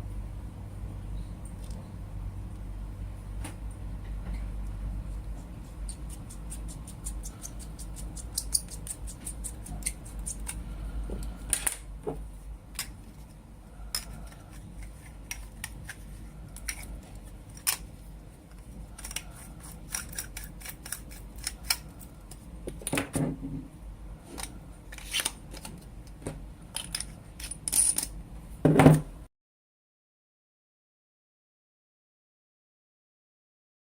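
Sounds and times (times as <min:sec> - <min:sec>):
steady low hum: 0:00.0 - 0:29.3
metal parts clicking and tapping: 0:05.8 - 0:10.6, 0:13.9 - 0:16.0, 0:17.5 - 0:17.9, 0:18.5 - 0:23.1, 0:26.7 - 0:28.2.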